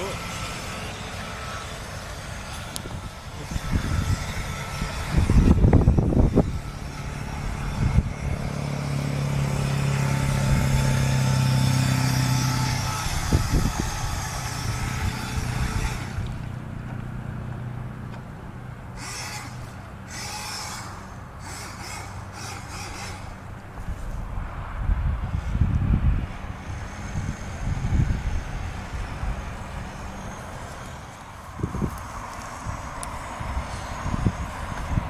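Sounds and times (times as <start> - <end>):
electric motor humming: 0.0 - 16.6, 19.0 - 23.6.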